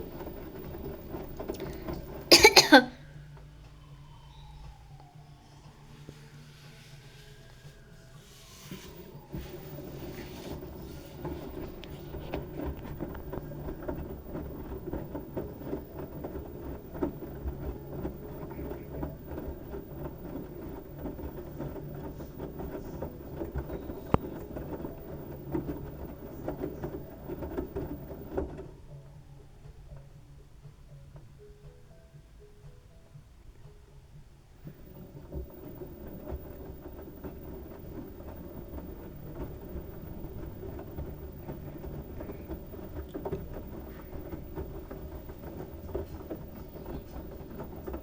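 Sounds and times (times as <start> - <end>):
washing machine drum rumbling: 0.0 - 48.0
small knocks and clatters: 34.6 - 48.0.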